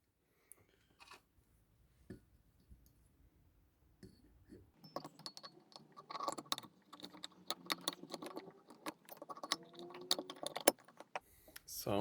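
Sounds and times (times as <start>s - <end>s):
small metal parts clinking: 4.8s - 11.6s.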